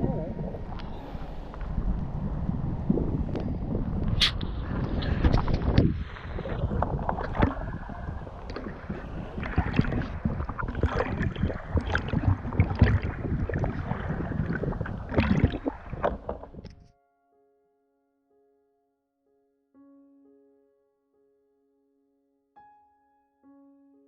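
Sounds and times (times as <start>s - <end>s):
wind rumble on microphone: 0.0s - 16.9s
paddle splashing in water: 4.2s - 16.7s.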